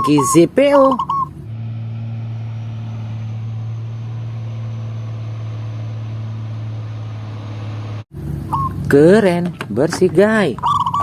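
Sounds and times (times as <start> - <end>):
low machine hum: 0.0 - 10.9.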